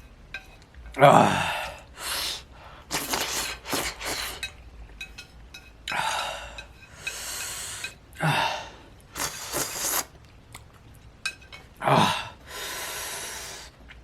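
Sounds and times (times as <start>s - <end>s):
man groaning: 1.0s - 1.6s, 11.8s - 12.4s
man gasping and huffing: 8.2s - 8.8s.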